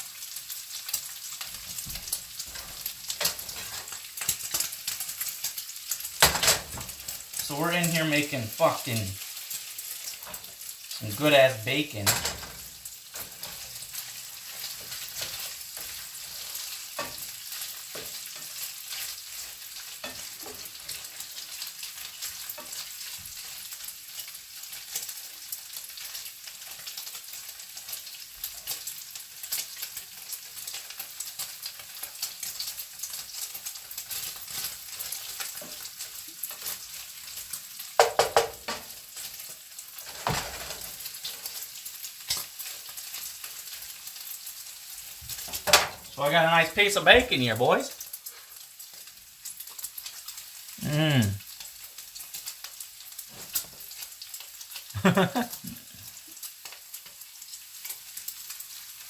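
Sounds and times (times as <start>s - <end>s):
bacon sizzling: 0.0s - 59.0s.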